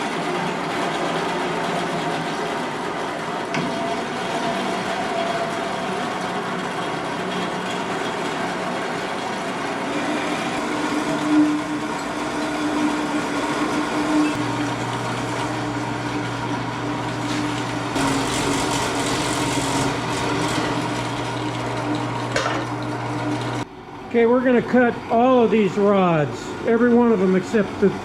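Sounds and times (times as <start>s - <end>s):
wet saw motor running: 8.0s - 23.6s
saw grinding through steel: 17.1s - 22.3s.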